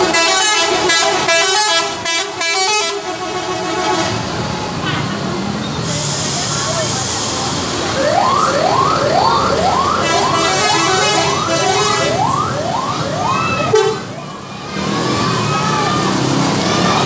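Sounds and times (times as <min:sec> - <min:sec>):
bus horn siren-like whoop: 0:00.0 - 0:04.2, 0:08.0 - 0:17.0.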